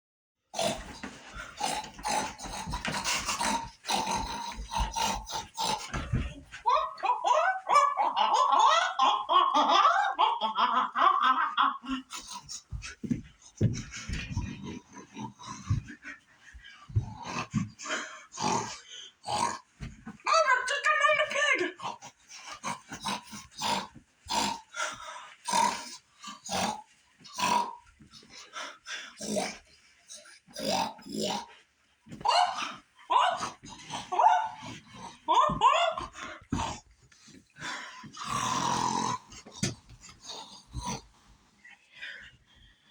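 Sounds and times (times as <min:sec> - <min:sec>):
chicken making grunting calls: 0:00.6 - 0:12.8, 0:38.2 - 0:41.2.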